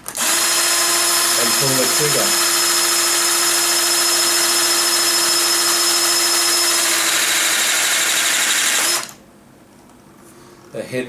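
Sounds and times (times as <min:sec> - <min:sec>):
hydraulic crimper motor whining: 0:00.0 - 0:09.2.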